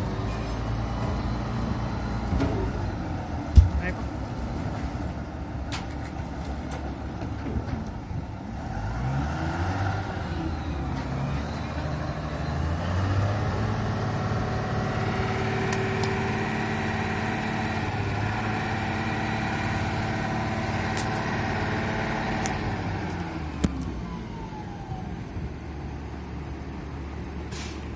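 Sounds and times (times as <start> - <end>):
diesel engine running: 10.0 - 27.9.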